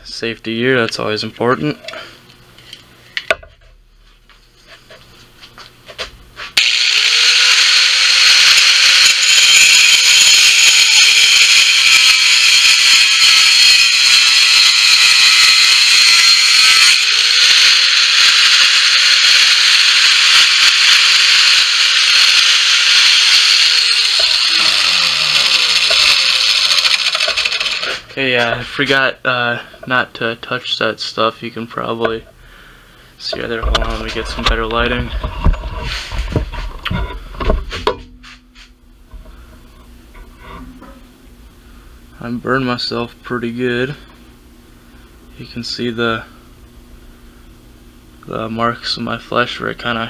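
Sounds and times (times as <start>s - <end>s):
angle grinder cutting metal: 6.6s - 28.1s.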